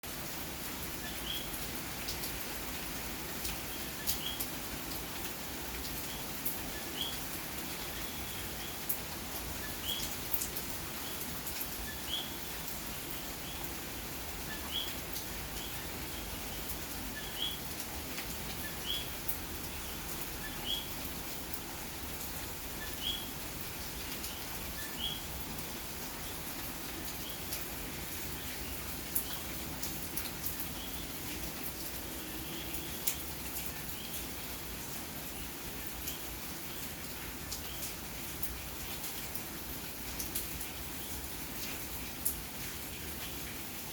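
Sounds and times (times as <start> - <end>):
steady rain: 0.0 - 43.9.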